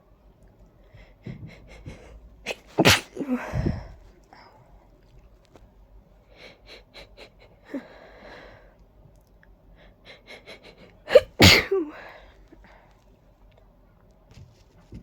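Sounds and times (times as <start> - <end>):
quick hitching breaths: 0.9 - 4.6
loud sneeze: 2.5 - 3.7, 11.1 - 12.0.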